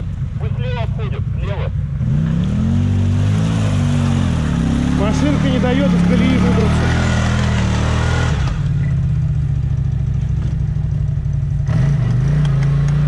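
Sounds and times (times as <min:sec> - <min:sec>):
engine revving high: 0:00.4 - 0:08.8, 0:11.7 - 0:13.0.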